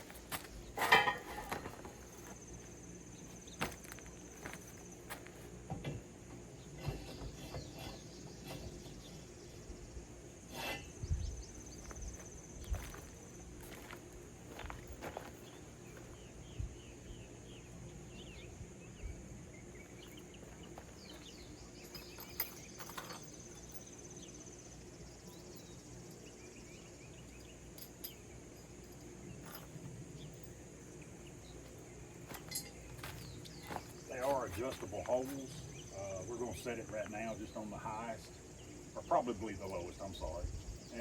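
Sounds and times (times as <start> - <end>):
high-pitched insect trill: 0.0 - 5.6, 6.5 - 41.0
bird chirps: 15.4 - 24.4.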